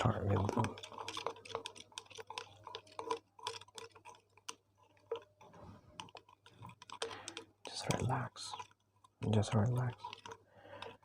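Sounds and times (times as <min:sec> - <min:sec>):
light tapping on small objects: 0:00.0 - 0:11.0.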